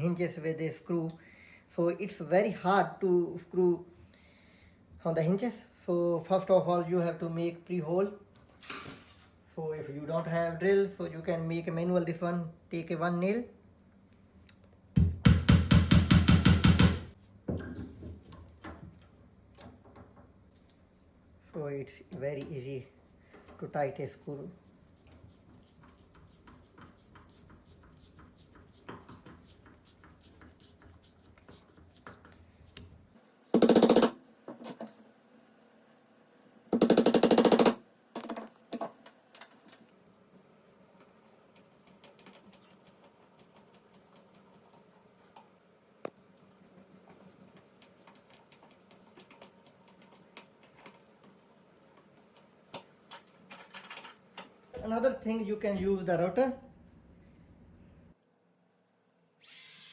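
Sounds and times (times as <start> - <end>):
impact driver rattling: 33.6 - 34.2, 36.8 - 37.8.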